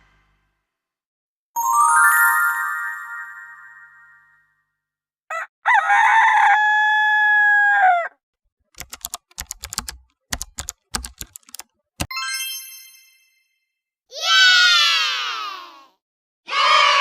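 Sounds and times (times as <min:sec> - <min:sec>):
rooster crowing: 0:05.3 - 0:08.2
keyboard typing: 0:08.7 - 0:12.1.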